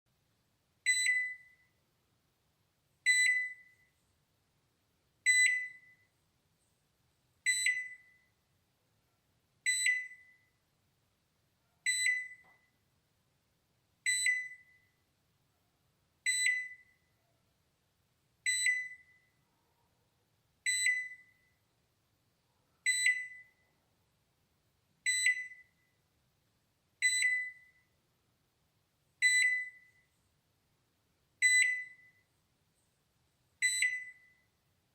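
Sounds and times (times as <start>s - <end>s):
microwave alarm beeping: 0.8s - 1.8s, 3.0s - 3.9s, 5.2s - 6.1s, 7.4s - 8.4s, 9.6s - 10.6s, 11.8s - 12.8s, 14.0s - 15.0s, 16.2s - 17.1s, 18.4s - 19.4s, 20.6s - 21.6s, 22.8s - 23.6s, 25.0s - 26.0s, 27.0s - 27.9s, 29.2s - 30.1s, 31.4s - 32.3s, 33.6s - 34.6s.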